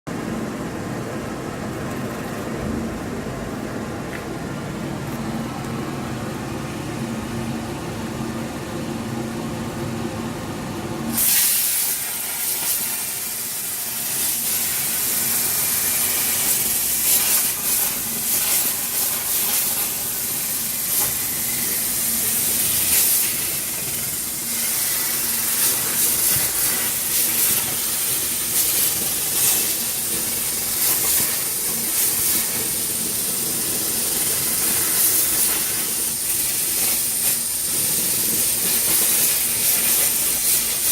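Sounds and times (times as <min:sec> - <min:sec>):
machine hum: 0:00.1 - 0:11.2
plasma cutter hissing: 0:11.1 - 0:40.9.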